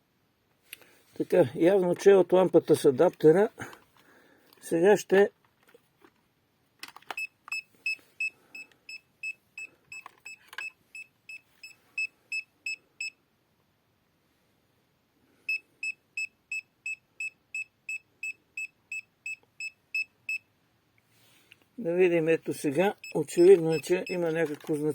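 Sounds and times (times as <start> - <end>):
meter alarm beeping: 23.0 - 24.6.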